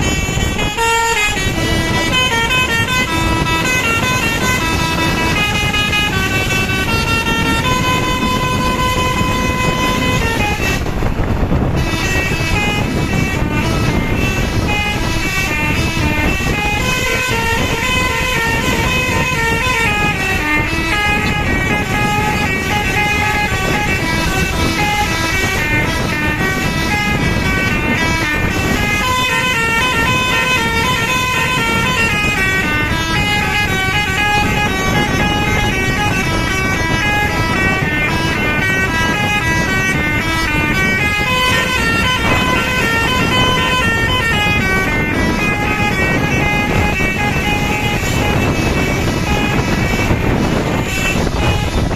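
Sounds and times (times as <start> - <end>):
low rumbling: 0.0 - 51.9
multi-tone air horn melody: 0.0 - 51.9.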